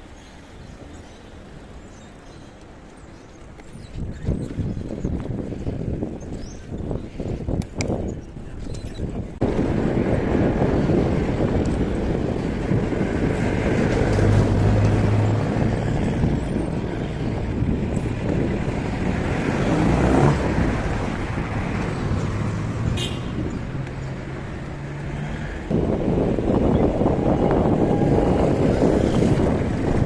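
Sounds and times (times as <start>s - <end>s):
road traffic: 0.0s - 30.0s
wind rushing over microphone: 3.4s - 30.0s
passing vehicle engines humming: 9.4s - 30.0s.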